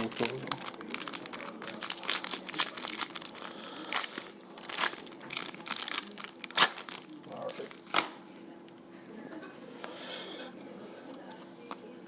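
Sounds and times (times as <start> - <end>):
packaging crinkling: 0.0 - 8.1.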